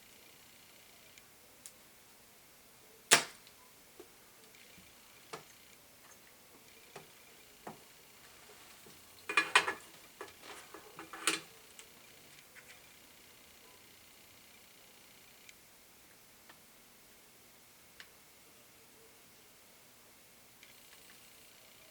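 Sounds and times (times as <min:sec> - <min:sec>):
clicks and rattles: 0:09.2 - 0:11.9.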